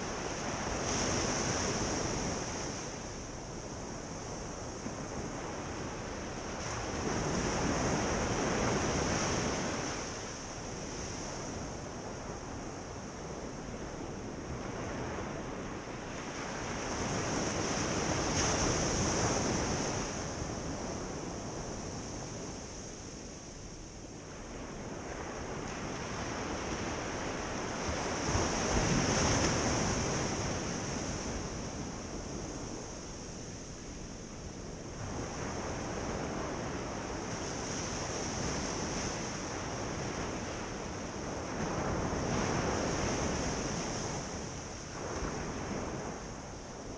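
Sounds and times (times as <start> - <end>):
waves breaking on beach: 0.0 - 46.9.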